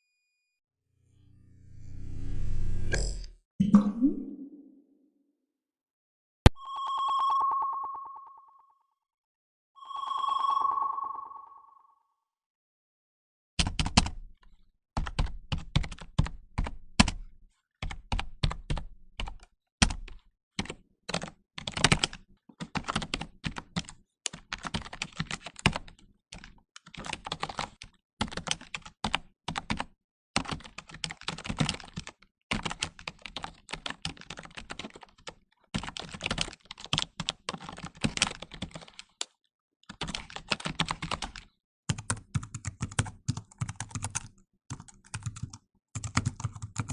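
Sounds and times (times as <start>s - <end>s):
rapid keyboard typing: 13.6s - 14.3s, 15.0s - 46.9s.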